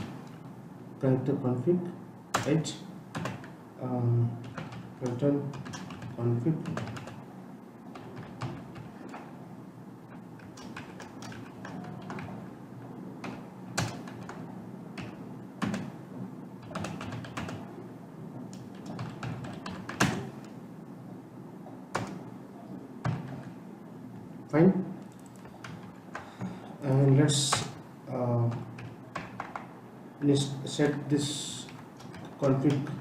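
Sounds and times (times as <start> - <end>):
low room hum: 0.0 - 33.0
computer keyboard typing: 2.3 - 3.6, 4.4 - 7.2, 7.9 - 9.2, 10.4 - 12.4, 13.2 - 16.0, 16.6 - 17.8, 18.5 - 20.5, 21.9 - 22.2, 25.1 - 27.8, 28.5 - 29.7.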